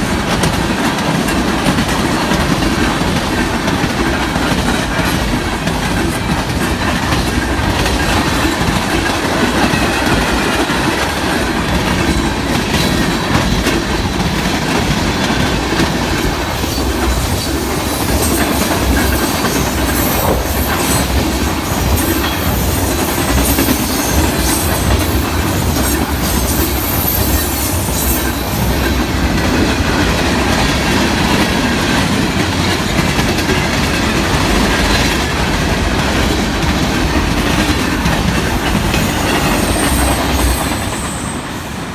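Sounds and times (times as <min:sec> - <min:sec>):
train wheels clickety-clack: 0:00.0 - 0:41.9
high wheel squeal: 0:16.5 - 0:29.0, 0:38.9 - 0:41.8.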